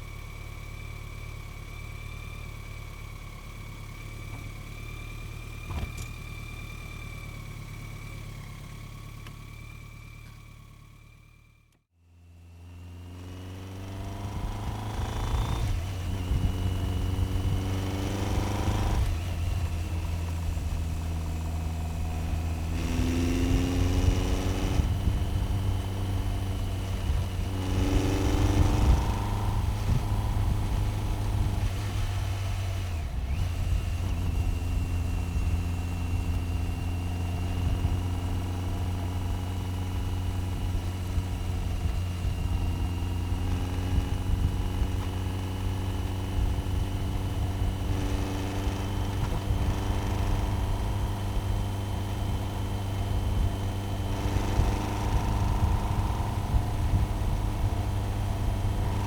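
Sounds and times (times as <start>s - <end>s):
motorcycle engine revving: 12.2s - 59.0s.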